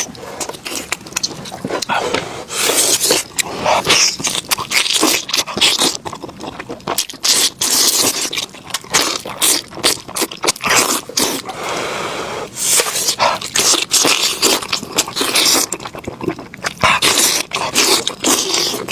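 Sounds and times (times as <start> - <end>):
wet chewing: 0.0 - 11.6, 12.6 - 18.9.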